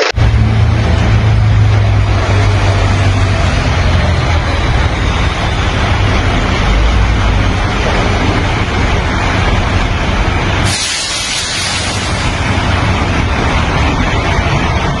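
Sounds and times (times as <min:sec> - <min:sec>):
diesel truck engine rumbling: 0:00.0 - 0:15.0
loud air hiss: 0:10.6 - 0:12.5.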